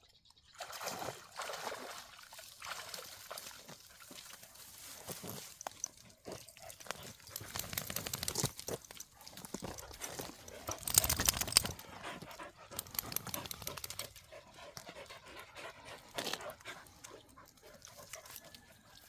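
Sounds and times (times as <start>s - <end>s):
dog panting: 9.2s - 18.8s.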